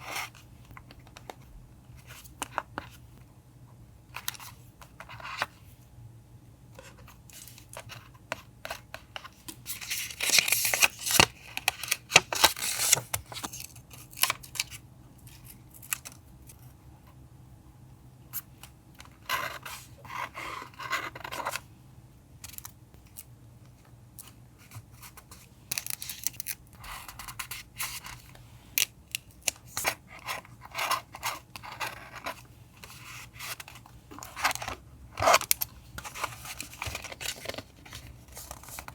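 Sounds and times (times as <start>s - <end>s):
paper rustling: 9.6s - 14.4s, 29.8s - 38.9s.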